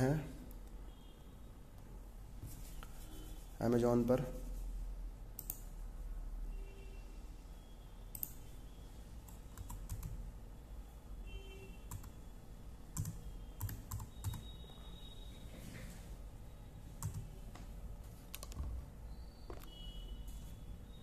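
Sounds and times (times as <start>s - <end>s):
keyboard keystrokes: 9.5s - 10.2s, 13.0s - 14.5s, 18.3s - 18.8s.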